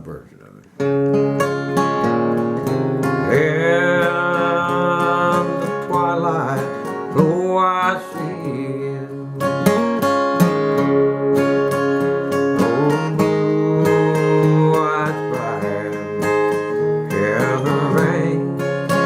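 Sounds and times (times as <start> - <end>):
acoustic guitar strumming: 0.7 - 19.0
man singing: 3.2 - 9.7, 12.6 - 19.0.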